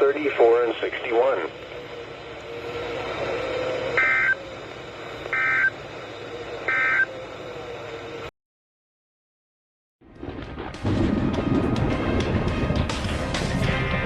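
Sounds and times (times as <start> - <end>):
radio hiss: 0.0 - 7.2
two-tone digital data bursts: 4.0 - 4.4, 5.3 - 5.7, 6.7 - 7.1.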